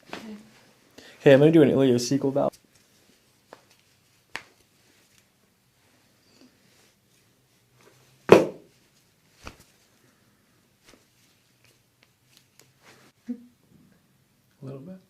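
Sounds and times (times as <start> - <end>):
loud thump: 8.3 - 8.7.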